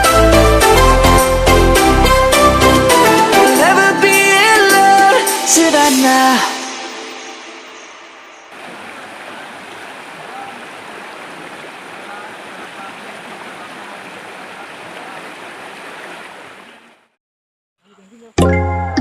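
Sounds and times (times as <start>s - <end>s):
music with strong bass: 0.0s - 5.0s
rushing stream water: 4.8s - 17.2s.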